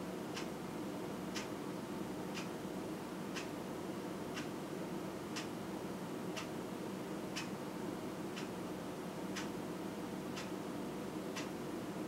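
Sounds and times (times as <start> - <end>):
clock ticking: 1.3 - 1.5, 2.3 - 2.5, 3.3 - 3.5.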